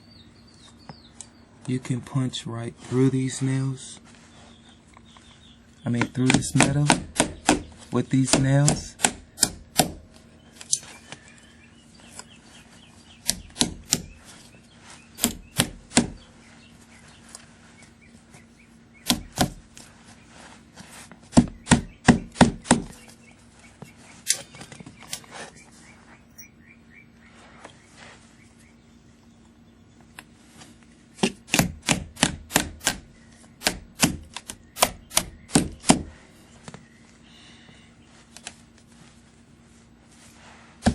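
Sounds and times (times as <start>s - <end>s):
hammer striking nails: 6.0s - 10.0s, 13.2s - 14.1s, 15.2s - 16.2s, 19.0s - 19.6s, 21.3s - 23.0s, 31.2s - 36.1s.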